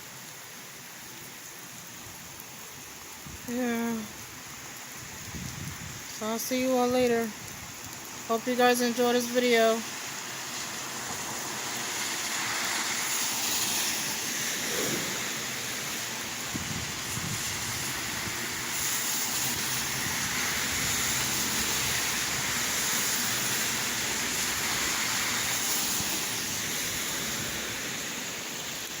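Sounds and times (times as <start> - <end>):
rain falling and splashing: 0.0 - 29.0.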